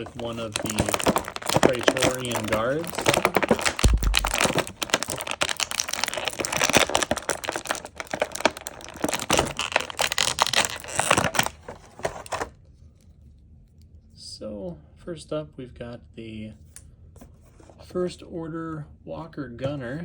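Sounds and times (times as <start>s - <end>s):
plastic and cardboard packaging tearing: 0.0s - 12.6s.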